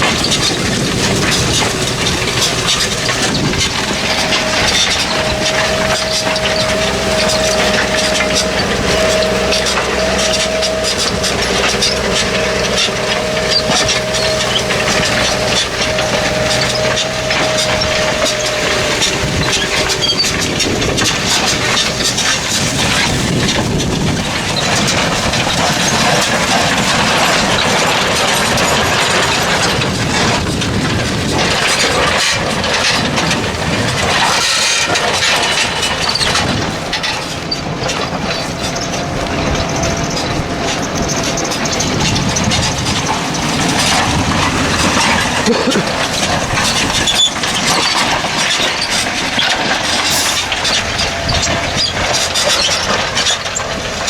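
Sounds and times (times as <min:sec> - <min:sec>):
plough soil noise: 0:00.0 - 0:54.0
tractor engine under load: 0:00.0 - 0:54.0.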